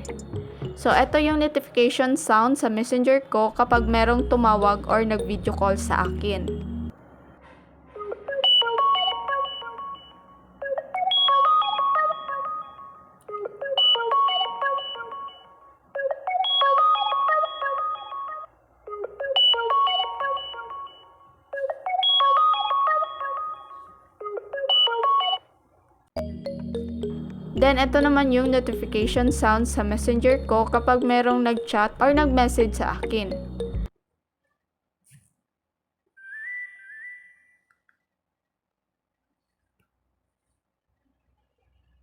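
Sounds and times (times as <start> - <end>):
phone ringtone with chiming notes: 8.0 - 25.5, 26.2 - 29.1, 30.2 - 33.9.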